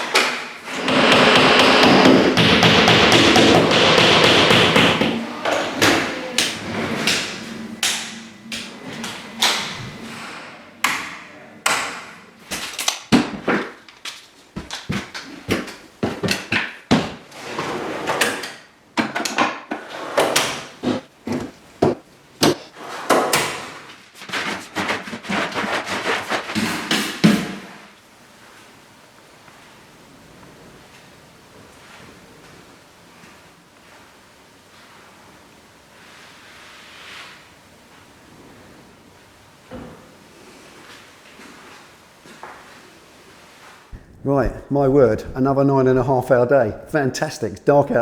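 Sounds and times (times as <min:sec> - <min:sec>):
hammering: 0:00.0 - 0:12.2
workshop knocks and clatters: 0:00.0 - 0:13.9, 0:14.5 - 0:17.7, 0:26.5 - 0:27.8.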